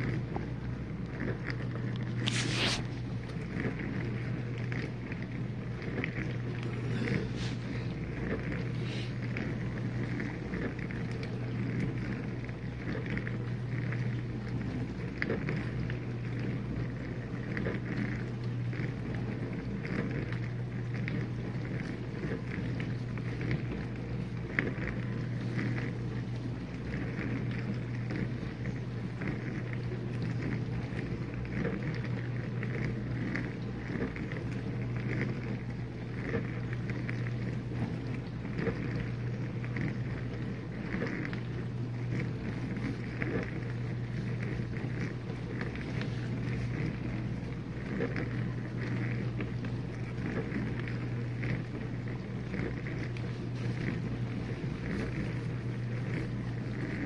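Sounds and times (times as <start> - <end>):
dishwasher pump hum: 0.0 - 57.0
water spraying inside dishwasher: 2.1 - 3.1.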